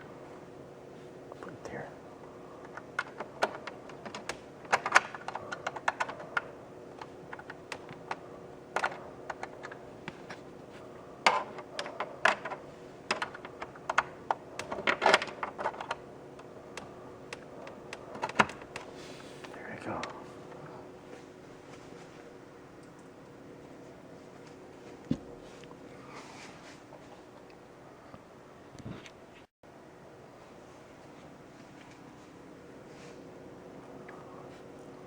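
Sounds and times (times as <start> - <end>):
plastic cables and connectors clicking: 2.6 - 10.4, 11.3 - 18.9.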